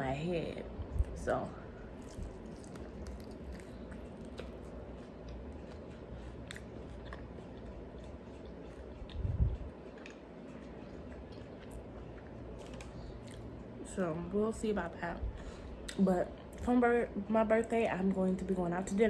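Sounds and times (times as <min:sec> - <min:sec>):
person chewing: 0:01.9 - 0:13.6.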